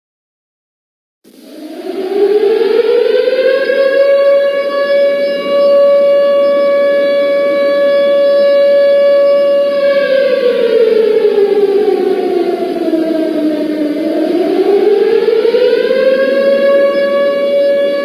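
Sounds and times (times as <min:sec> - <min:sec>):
civil defence siren wailing: 0:01.3 - 0:18.0.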